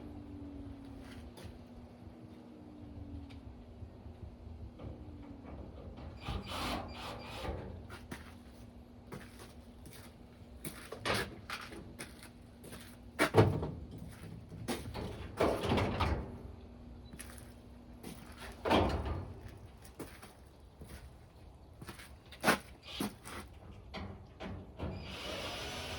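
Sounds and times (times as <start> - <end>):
metal panels knocking and scraping: 13.2 - 16.4.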